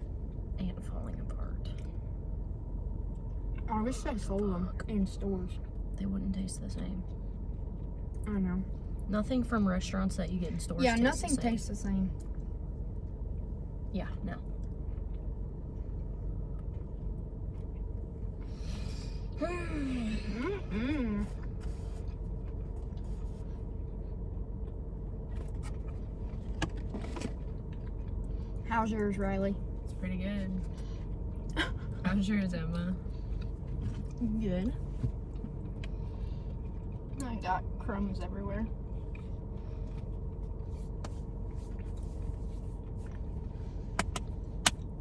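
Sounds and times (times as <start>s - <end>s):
car cabin hum: 0.0s - 45.0s
sharp click: 44.0s - 44.8s.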